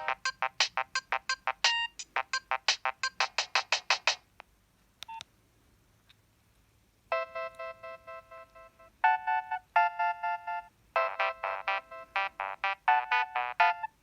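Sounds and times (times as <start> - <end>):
phone ringtone synth chords: 7.1 - 14.0.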